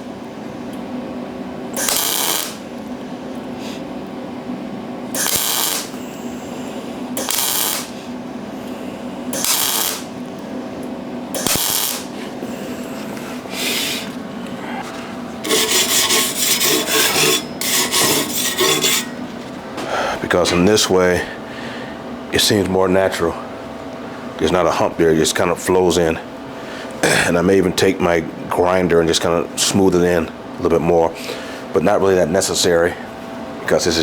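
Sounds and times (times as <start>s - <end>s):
steady machine hum: 0.0s - 34.0s
welder arc crackling: 1.8s - 2.7s, 5.2s - 6.6s, 7.2s - 8.1s, 9.4s - 10.2s, 11.4s - 14.1s.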